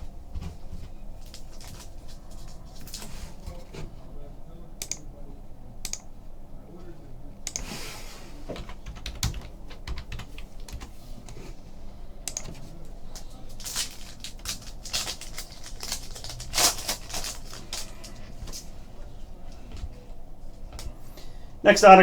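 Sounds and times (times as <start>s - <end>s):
cards clicking and rustling: 0.6s - 3.5s, 12.4s - 18.7s.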